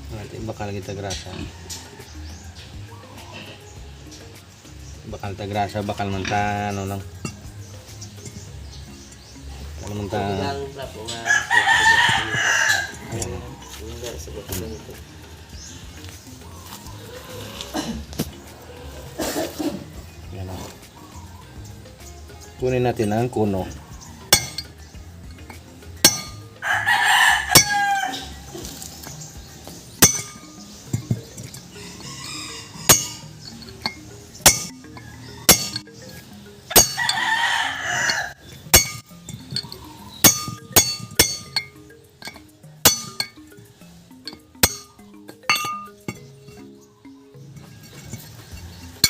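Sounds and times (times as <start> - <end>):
rooster crowing: 11.1 - 13.3, 26.6 - 28.5, 31.6 - 33.6, 36.7 - 38.4
metal-on-metal strikes and clinks: 24.1 - 26.6, 27.4 - 32.1, 32.8 - 37.3, 38.0 - 46.8, 47.5 - 49.0.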